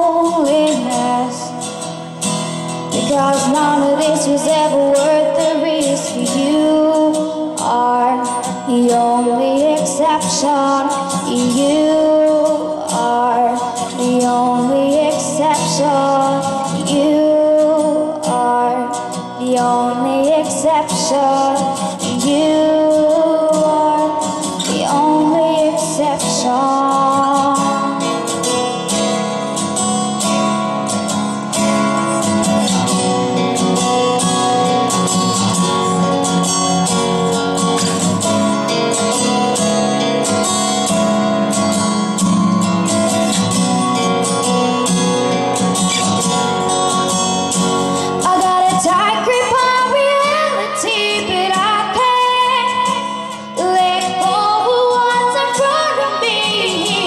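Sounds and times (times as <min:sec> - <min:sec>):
woman singing: 0:00.0 - 0:02.0, 0:02.9 - 0:28.6, 0:47.9 - 0:57.0
acoustic guitar: 0:00.0 - 0:57.0.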